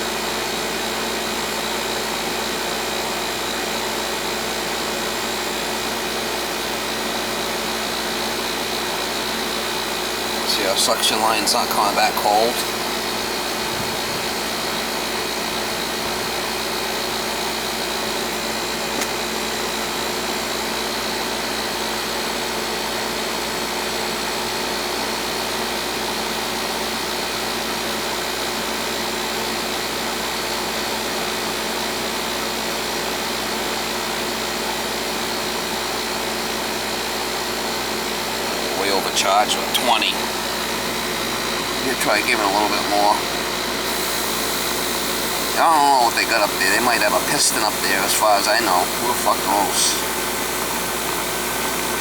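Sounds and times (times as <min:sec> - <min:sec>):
air conditioner unit humming: 0:00.0 - 0:22.6, 0:35.2 - 0:52.0.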